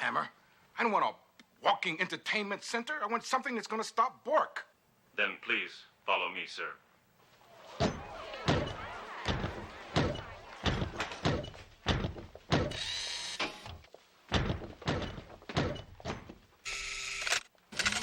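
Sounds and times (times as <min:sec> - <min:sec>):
heavy clomping footsteps: 0:07.9 - 0:12.8, 0:13.9 - 0:16.6
high mechanical whir: 0:12.7 - 0:13.7.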